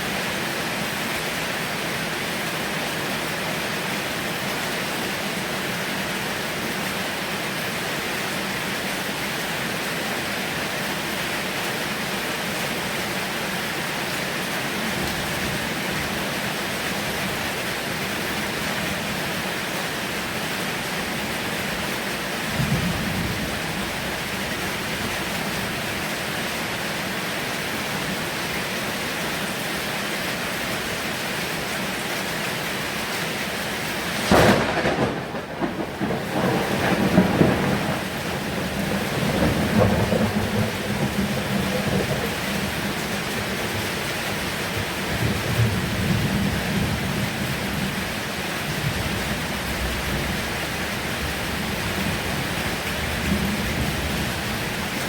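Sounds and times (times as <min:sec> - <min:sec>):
heavy rain falling: 0:00.0 - 0:55.0
low rumble of thunder: 0:22.4 - 0:25.8, 0:34.1 - 0:54.9.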